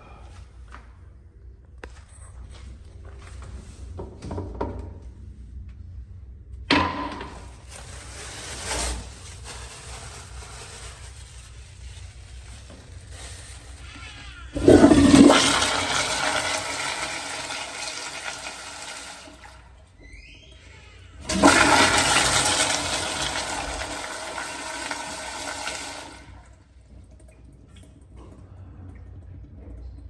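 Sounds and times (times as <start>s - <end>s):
toilet flushing: 13.9s - 19.8s, 21.2s - 28.4s
faint rising squeak: 20.0s - 21.2s.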